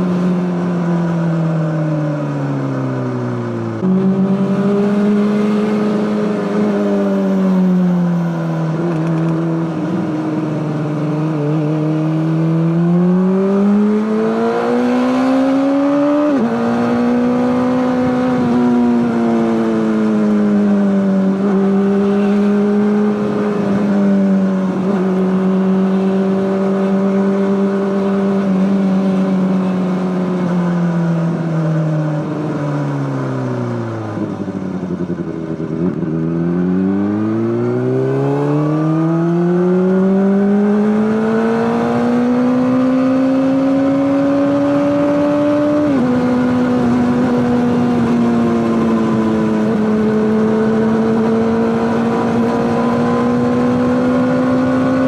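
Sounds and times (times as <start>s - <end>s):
motorcycle engine running: 15.3s - 55.0s.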